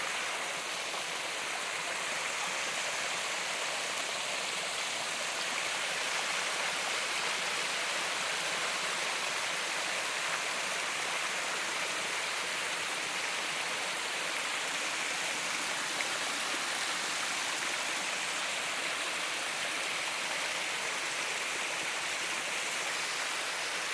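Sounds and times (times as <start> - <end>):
water rushing and splashing: 0.0 - 23.9.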